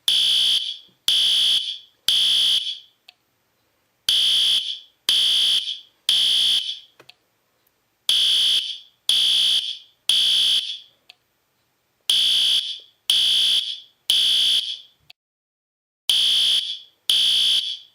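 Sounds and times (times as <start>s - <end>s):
fire alarm beeping: 0.1s - 3.0s, 4.1s - 6.9s, 8.1s - 10.9s, 12.1s - 14.9s, 16.1s - 17.9s.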